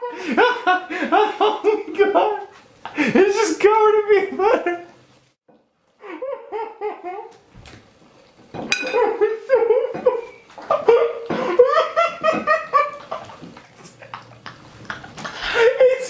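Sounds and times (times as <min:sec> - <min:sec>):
people laughing hard: 0:00.0 - 0:03.4, 0:09.0 - 0:16.0.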